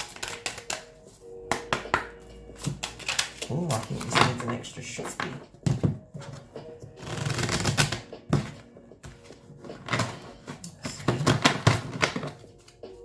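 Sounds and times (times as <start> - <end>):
cards being shuffled: 0.0 - 0.9, 2.6 - 5.4, 7.0 - 12.8.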